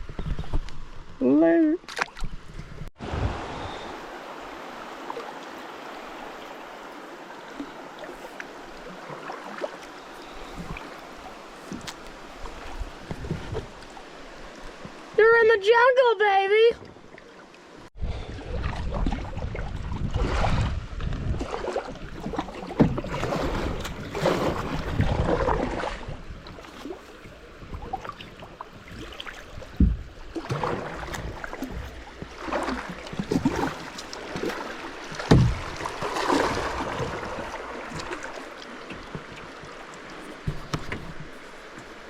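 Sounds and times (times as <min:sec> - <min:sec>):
paddle splashing in water: 0:01.9 - 0:15.3, 0:16.8 - 0:42.0
dull thumps: 0:35.1 - 0:36.0.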